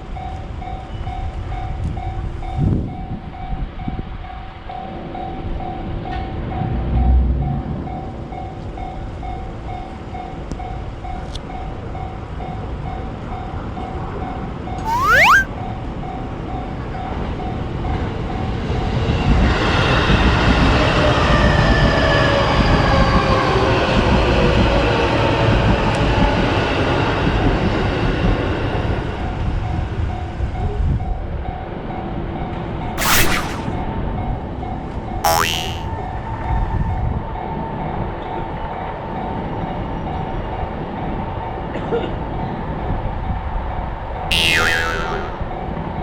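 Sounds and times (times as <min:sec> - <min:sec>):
short loud rising tone: 0:14.9 - 0:15.5, 0:33.0 - 0:33.8, 0:35.3 - 0:35.9, 0:44.3 - 0:45.4.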